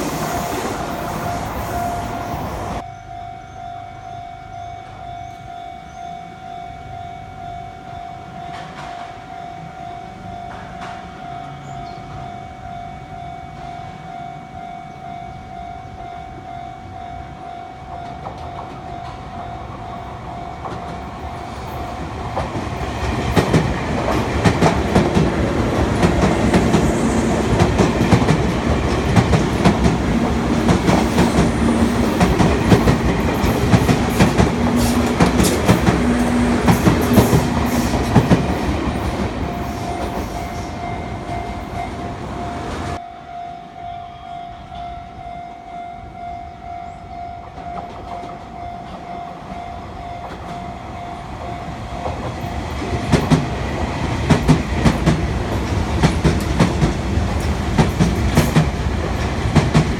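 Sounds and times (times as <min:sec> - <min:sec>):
crossing warning bell ringing: 0:00.0 - 0:59.9
low train hum: 0:00.0 - 0:59.9
train wheels clicking over rail joints: 0:20.6 - 0:42.0, 0:52.0 - 0:59.9.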